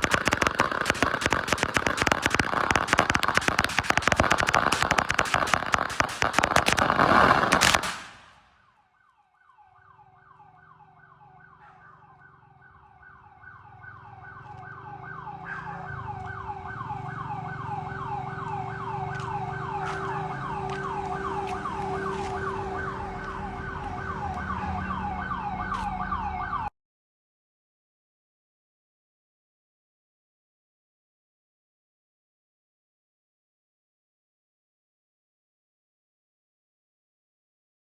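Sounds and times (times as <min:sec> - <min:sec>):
electronic siren wailing: 0:00.0 - 0:07.8, 0:08.4 - 0:26.7
firecracker string cracking: 0:00.0 - 0:08.6.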